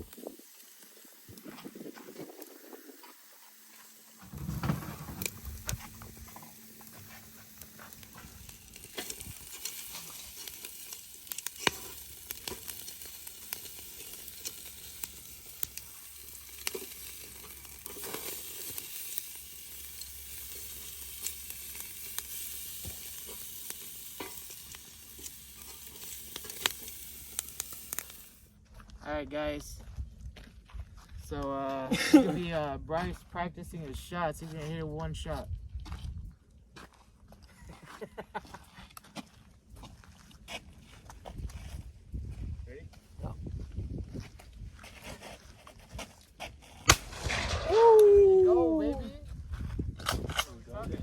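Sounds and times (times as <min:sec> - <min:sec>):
food sizzling: 0:00.0 - 0:28.5, 0:46.9 - 0:49.0
pops and clicks from stirring: 0:05.1 - 0:28.4.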